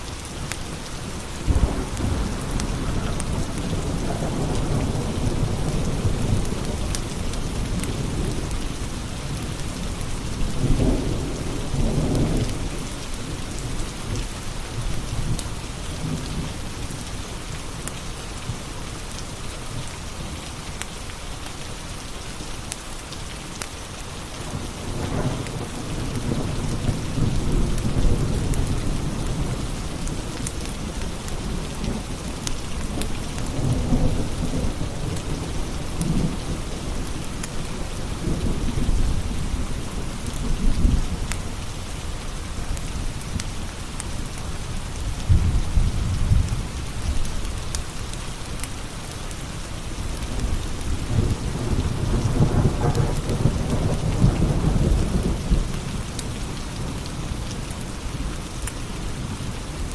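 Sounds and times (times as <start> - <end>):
wood fire crackling: 0.0 - 10.2
steady rain: 0.0 - 59.9
thunder rolling: 1.0 - 9.0, 45.1 - 47.2.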